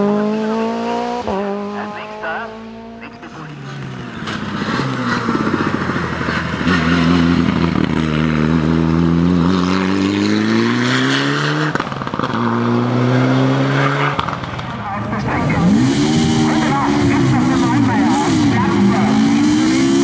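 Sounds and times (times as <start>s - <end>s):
race car engine accelerating: 0.0s - 20.0s.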